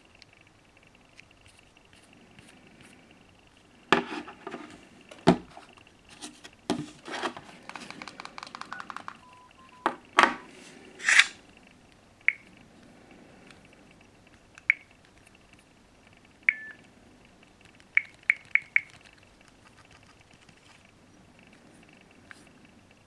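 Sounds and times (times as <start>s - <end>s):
handling clicks and knocks: 4.0s - 10.5s
faint beep: 8.8s - 10.5s, 16.5s - 16.8s.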